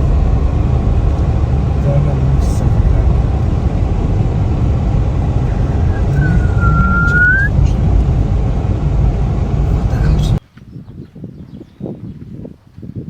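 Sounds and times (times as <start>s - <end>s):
low rumbling noise: 0.0s - 10.4s
short whistling tone: 5.8s - 7.6s.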